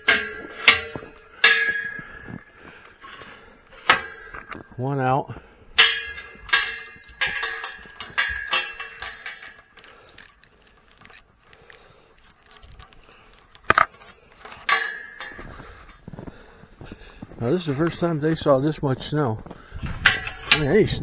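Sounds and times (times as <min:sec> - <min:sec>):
metal gate hardware clanking: 0:00.0 - 0:04.7, 0:05.8 - 0:15.7, 0:20.0 - 0:20.9.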